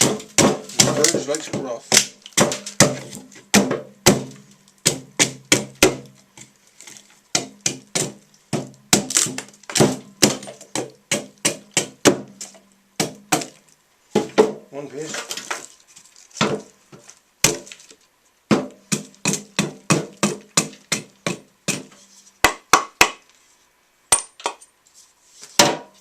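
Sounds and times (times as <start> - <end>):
chopping strikes into wood: 0.0 - 6.1, 7.3 - 14.6, 17.4 - 17.7, 18.5 - 23.2, 25.6 - 25.9.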